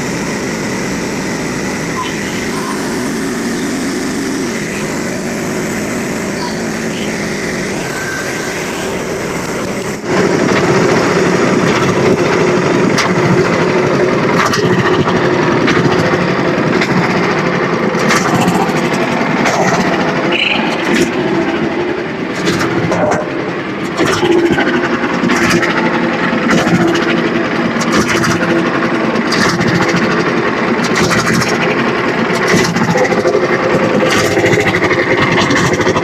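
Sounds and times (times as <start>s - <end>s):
small engine running: 0.0s - 36.0s
scattered clicks and knocks: 8.6s - 36.0s.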